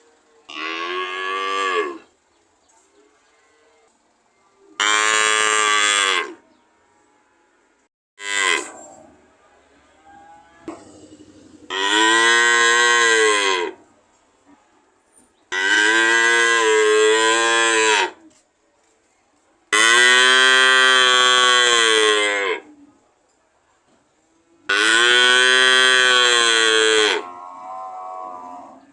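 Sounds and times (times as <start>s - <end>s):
cow mooing: 0.5s - 2.1s, 4.8s - 6.4s, 8.2s - 9.0s, 11.7s - 13.8s, 15.5s - 18.2s, 19.8s - 22.7s, 24.7s - 28.9s.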